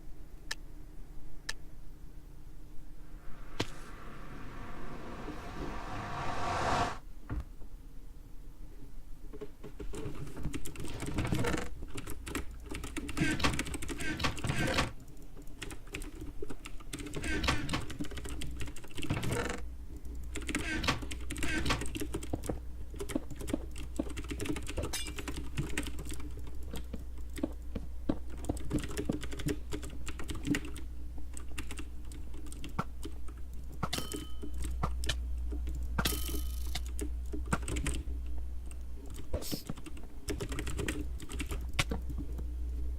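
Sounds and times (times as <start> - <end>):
steady low hum: 0.0 - 7.0
typing on computer keyboard: 11.9 - 14.6, 23.0 - 27.4, 28.4 - 30.8, 31.4 - 33.2, 36.8 - 38.0, 39.1 - 41.7.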